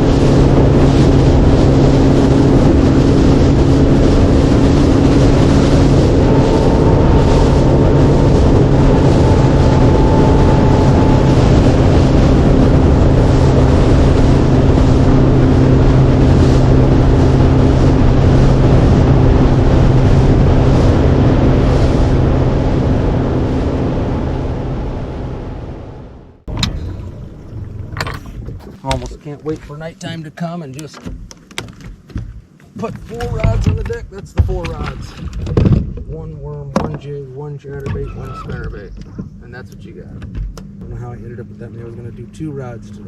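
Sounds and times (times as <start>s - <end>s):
outboard motor running: 0.0s - 25.0s, 26.5s - 29.9s
wind noise on microphone: 0.0s - 29.8s, 31.1s - 36.9s, 37.8s - 41.2s.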